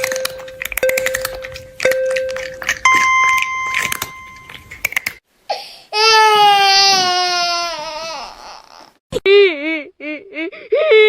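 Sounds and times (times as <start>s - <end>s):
electronic beeps rising in pitch: 0.0s - 4.8s
clicks: 0.0s - 5.2s.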